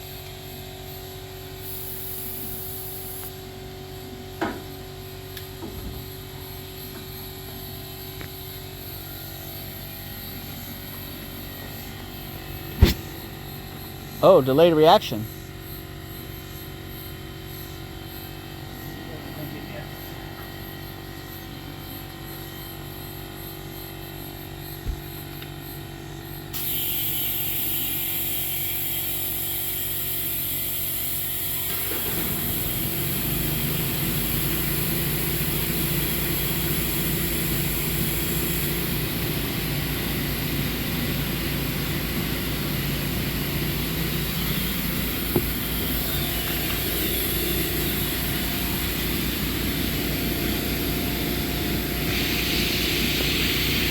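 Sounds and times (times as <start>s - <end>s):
engine running: 0.0s - 53.9s
short sharp click: 12.8s - 13.0s.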